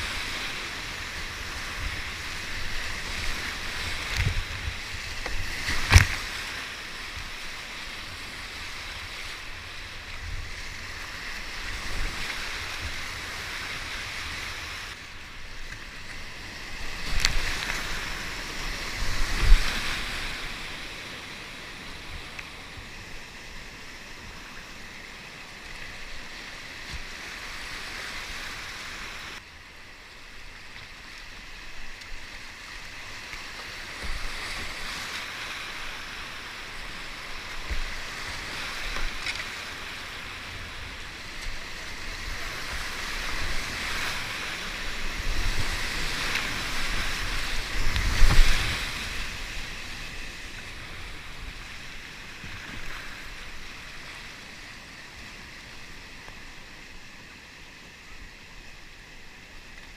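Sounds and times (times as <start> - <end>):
rushing whitewater: 0.0 - 59.9
wind buffeting microphone: 1.6 - 6.2.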